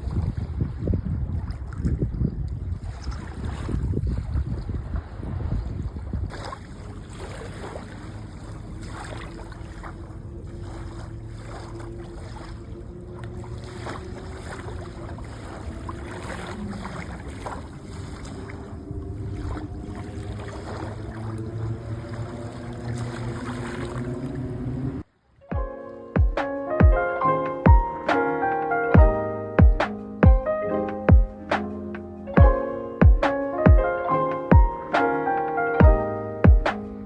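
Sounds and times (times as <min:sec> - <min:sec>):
sea waves washing onto shore: 0:06.3 - 0:25.0
low steady hum: 0:06.8 - 0:25.0.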